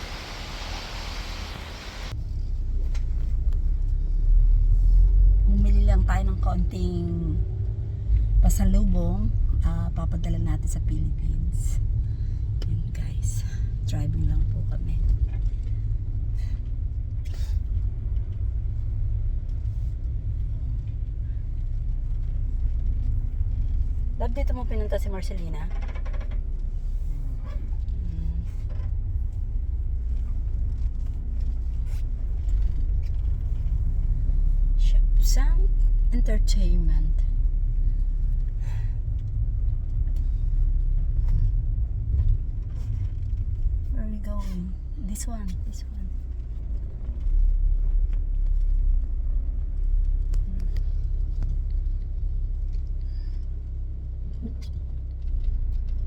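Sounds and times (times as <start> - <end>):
car driving rumble inside cabin: 0.0 - 56.0.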